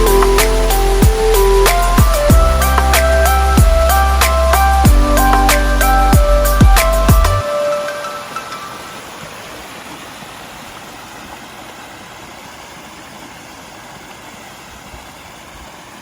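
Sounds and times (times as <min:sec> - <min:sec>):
waterfall splashing over rocks: 0:00.0 - 0:05.9, 0:07.4 - 0:16.0.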